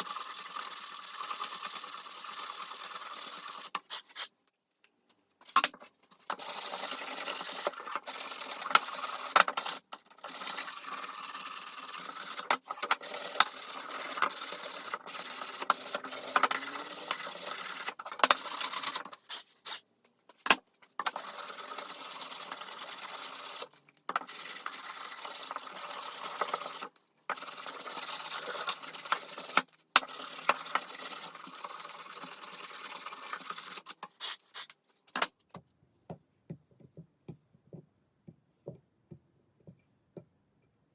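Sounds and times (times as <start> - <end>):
sandpaper rasping on wood: 0.0 - 4.4, 6.3 - 19.8, 21.1 - 23.7, 24.3 - 34.7.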